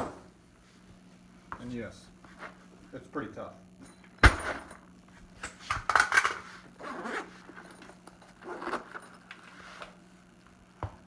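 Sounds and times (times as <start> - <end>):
nylon bag rasping: 6.8 - 9.8.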